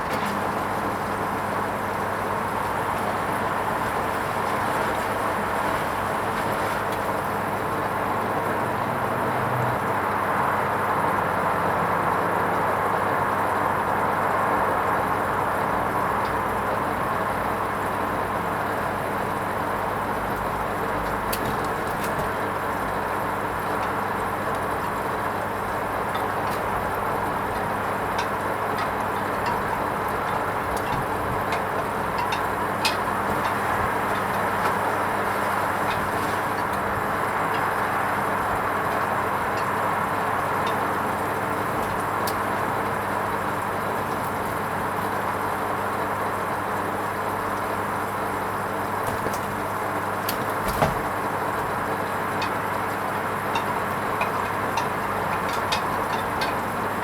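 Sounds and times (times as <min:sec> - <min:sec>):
washing machine rushing water: 0:00.0 - 0:57.0
washing machine clicks: 0:20.4 - 0:42.7, 0:48.8 - 0:57.0.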